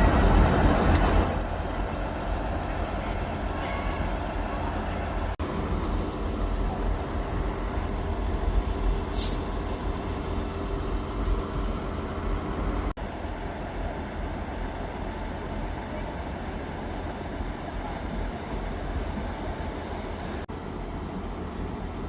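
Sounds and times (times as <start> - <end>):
diesel train engine idling: 0.0 - 22.0
air hiss: 8.6 - 9.5.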